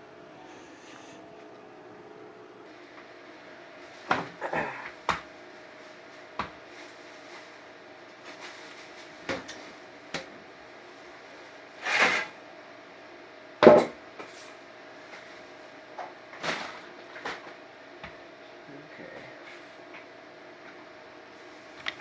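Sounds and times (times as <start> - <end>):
faint hum: 0.0 - 22.0
scraping rustles: 5.6 - 9.8.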